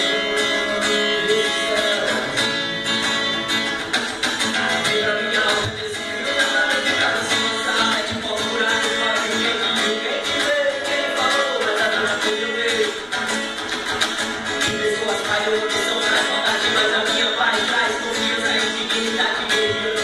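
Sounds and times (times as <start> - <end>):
plucked guitar music: 0.0 - 20.0.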